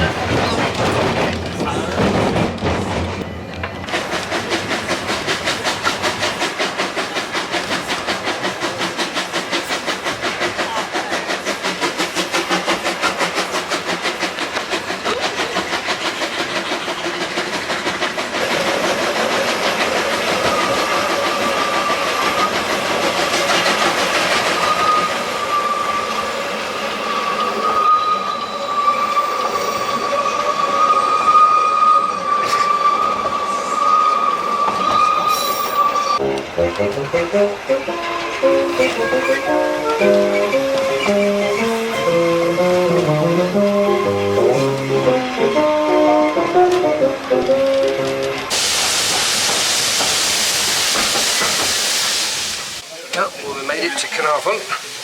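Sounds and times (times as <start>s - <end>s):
steam locomotive exhaust beating: 0.0s - 28.3s, 29.0s - 55.0s
high-pitched squeal: 24.5s - 36.2s, 36.9s - 44.8s.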